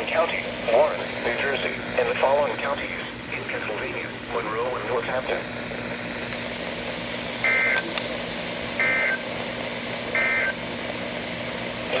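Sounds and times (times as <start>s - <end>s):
radio hiss: 0.0s - 5.5s, 10.2s - 12.0s
data tone bursts: 7.4s - 7.8s, 8.8s - 9.2s, 10.2s - 10.6s.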